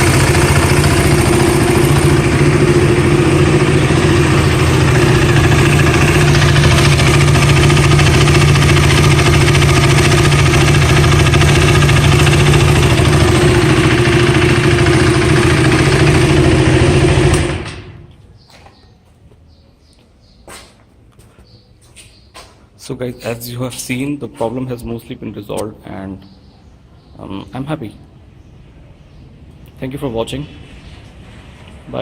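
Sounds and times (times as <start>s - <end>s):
motorcycle engine idling: 0.0s - 18.1s.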